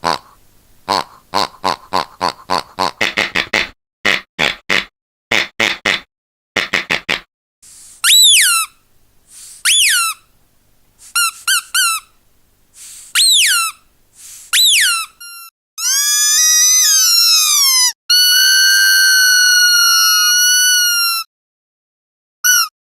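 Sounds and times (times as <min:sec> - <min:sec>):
air hiss from toy refilling: 0:07.6 - 0:10.1, 0:11.0 - 0:12.0, 0:12.7 - 0:14.7
squeaky dog toy squeaking: 0:08.0 - 0:08.7, 0:09.6 - 0:10.2, 0:11.2 - 0:12.1, 0:13.2 - 0:13.8, 0:14.5 - 0:21.2, 0:22.4 - 0:22.7.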